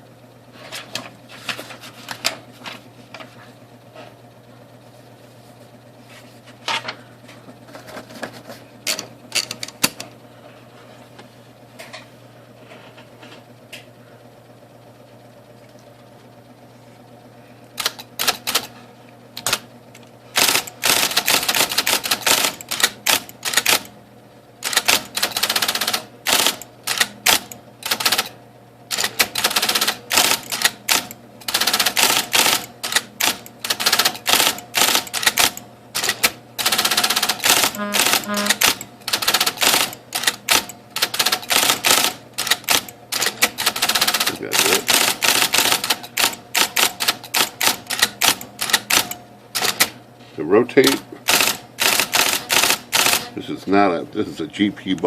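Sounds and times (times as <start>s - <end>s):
typewriter motor hum: 7.7s - 10.1s, 17.7s - 24.0s, 24.6s - 53.6s
typewriter keystrokes: 17.8s - 18.7s, 19.4s - 19.6s, 20.4s - 23.9s, 24.6s - 28.3s, 28.9s - 50.0s, 50.8s - 53.3s.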